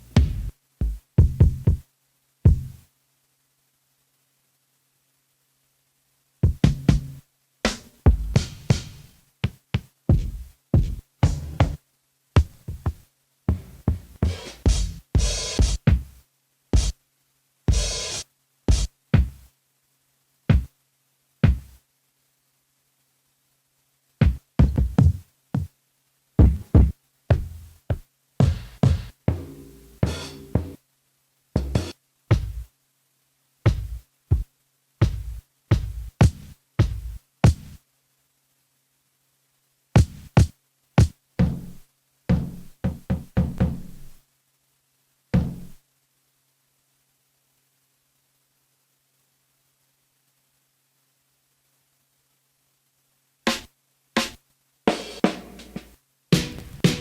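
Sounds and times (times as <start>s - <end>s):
heavy drum hits: 56.4s - 57.0s.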